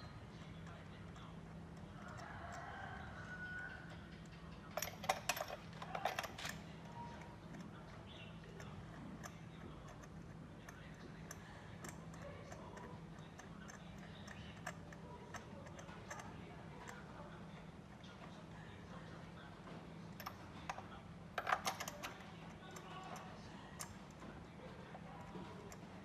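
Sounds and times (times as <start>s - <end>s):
faint steady hum: 0.0s - 26.0s
metal hand tools clinking: 4.8s - 6.6s.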